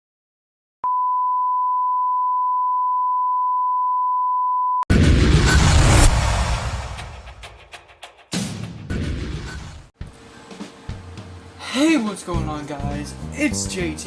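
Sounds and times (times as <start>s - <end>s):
loud deep crash: 4.9s - 7.8s.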